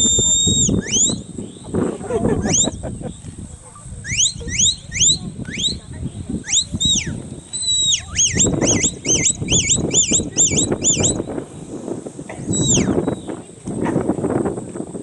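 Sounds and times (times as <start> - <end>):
handler whistling commands: 0.0 - 1.8, 2.4 - 2.9, 3.9 - 11.3, 12.4 - 13.4.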